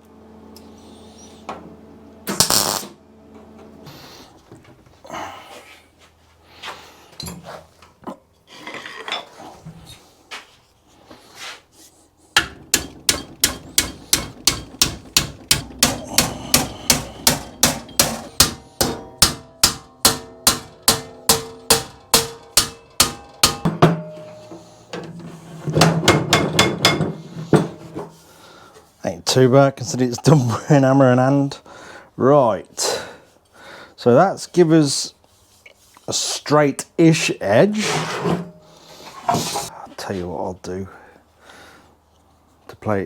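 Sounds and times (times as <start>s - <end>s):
hammer beating sheet metal: 12.4s - 24.6s, 25.7s - 27.8s
sheet metal clattering: 17.2s - 27.8s.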